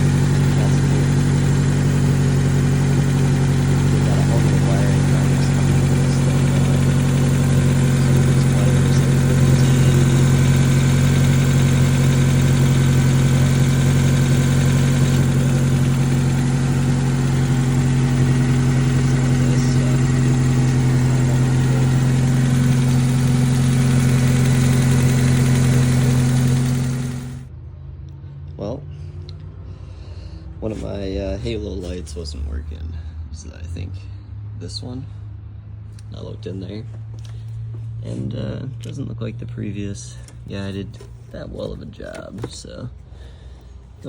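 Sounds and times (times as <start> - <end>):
car engine idling: 0.0 - 27.5.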